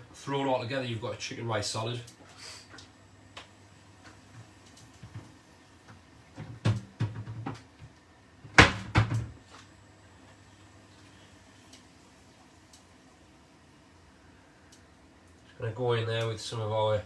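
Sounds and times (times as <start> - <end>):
kitchen items knocking and clattering: 6.4 - 7.6.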